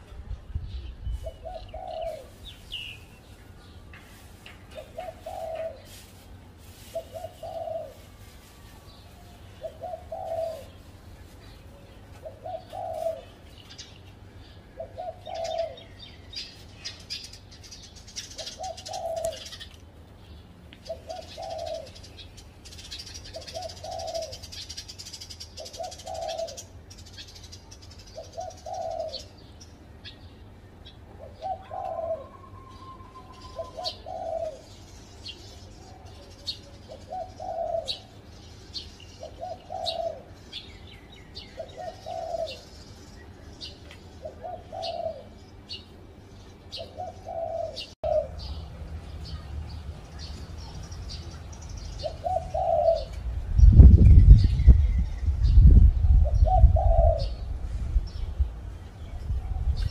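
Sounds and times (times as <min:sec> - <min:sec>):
dove cooing: 0:01.2 - 0:02.4, 0:04.7 - 0:06.1, 0:06.8 - 0:08.3, 0:09.5 - 0:10.9, 0:11.6 - 0:13.4, 0:14.8 - 0:16.0, 0:18.3 - 0:19.7, 0:20.9 - 0:22.0, 0:22.8 - 0:24.9, 0:25.6 - 0:26.7, 0:28.2 - 0:29.5, 0:31.2 - 0:34.8, 0:35.8 - 0:38.2, 0:39.2 - 0:40.4, 0:41.4 - 0:42.8, 0:44.2 - 0:45.8, 0:46.7 - 0:48.6, 0:52.0 - 0:53.2, 0:56.2 - 0:57.6
small birds chirping: 0:08.9 - 0:59.9.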